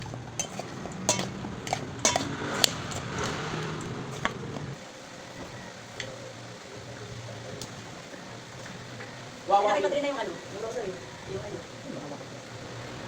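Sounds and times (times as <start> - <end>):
utensils clinking on dishes: 0.0 - 3.5
low steady hum: 0.0 - 12.7.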